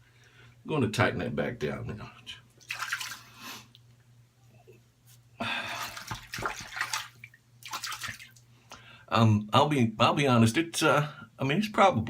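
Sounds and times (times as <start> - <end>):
water splashing in a sink: 2.6 - 3.4, 5.4 - 8.5.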